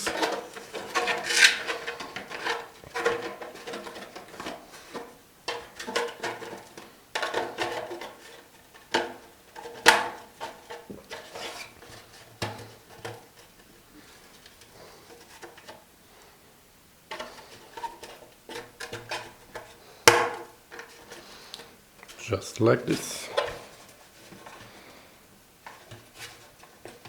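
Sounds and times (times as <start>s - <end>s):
plastic pieces rubbing and clacking: 0.0s - 12.0s.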